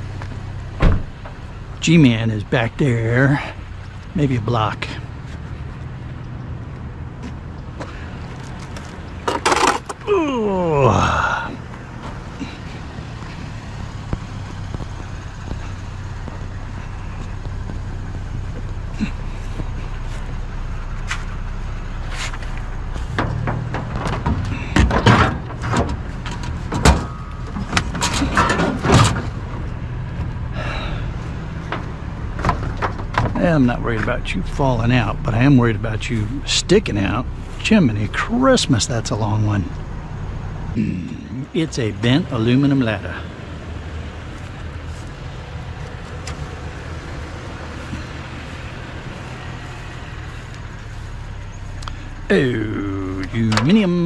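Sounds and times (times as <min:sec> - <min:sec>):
vehicle engine idling: 0:00.0 - 0:54.0
metal scrap clanking: 0:22.2 - 0:29.5.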